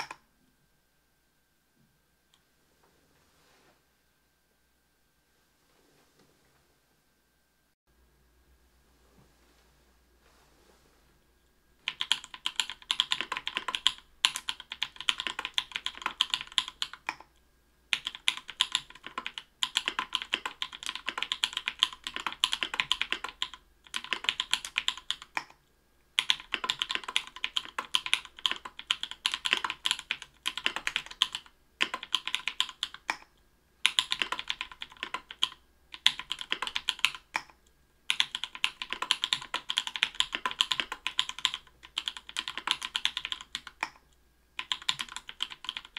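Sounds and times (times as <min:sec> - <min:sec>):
mechanical keyboard typing: 0:00.0 - 0:00.2, 0:11.8 - 0:17.3, 0:17.9 - 0:25.6, 0:26.2 - 0:44.0, 0:44.6 - 0:45.9.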